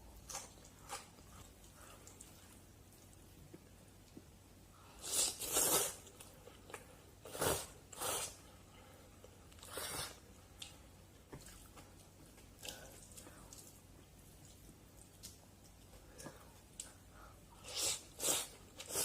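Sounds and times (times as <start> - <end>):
quiet chewing: 0.0 - 4.3, 8.3 - 19.0.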